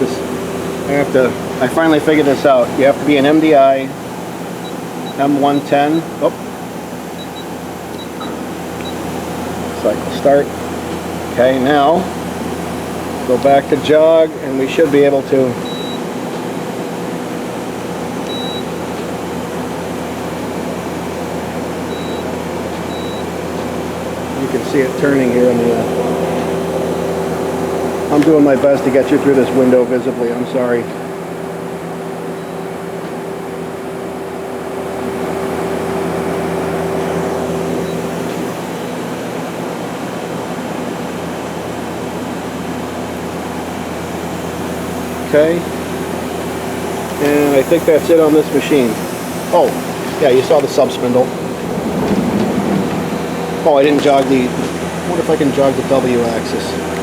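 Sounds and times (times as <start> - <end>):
machine hum: 0.0 - 57.0
held machine tone: 7.1 - 9.1, 15.6 - 16.1, 18.2 - 18.8, 21.8 - 23.4, 32.3 - 32.8.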